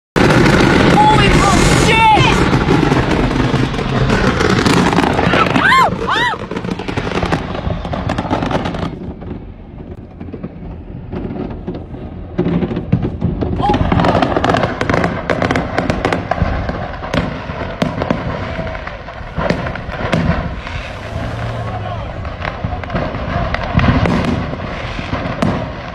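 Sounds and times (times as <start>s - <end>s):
fireworks bangs and crackles: 0.2s - 25.9s.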